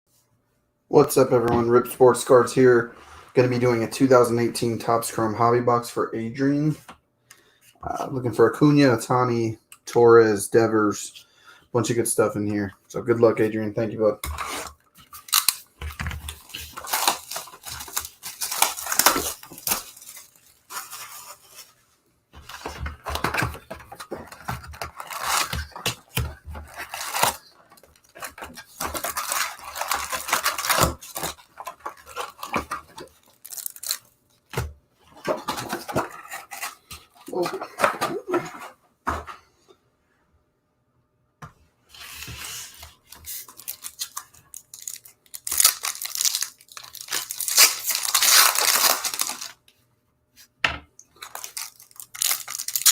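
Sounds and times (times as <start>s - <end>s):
foil wrappers tearing and crinkling: 14.2s - 21.7s, 22.5s - 34.2s, 42.0s - 49.6s, 51.2s - 52.9s
cards being handled: 42.0s - 49.5s.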